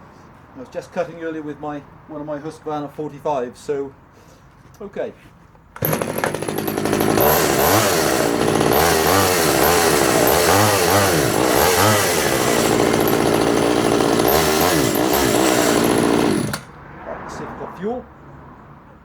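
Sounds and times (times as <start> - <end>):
chainsaw revving and idling: 5.8 - 16.7.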